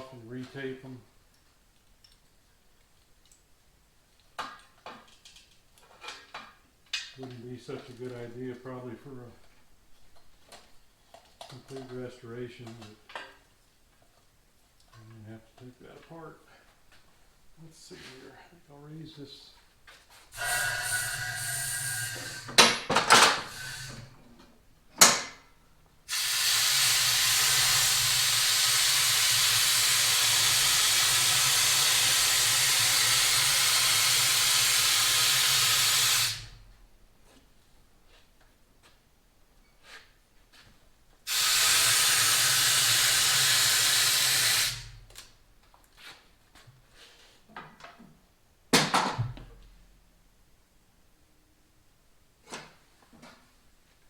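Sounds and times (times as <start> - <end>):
hydraulic lift hissing with hum: 20.4 - 24.2, 26.1 - 36.7, 41.3 - 45.1.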